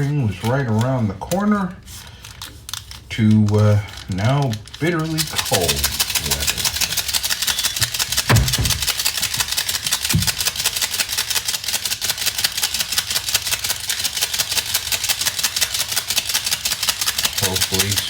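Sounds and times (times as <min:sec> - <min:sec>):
fast mechanical ticking rattle: 0:04.6 - 0:18.0
low thump: 0:08.3 - 0:08.9.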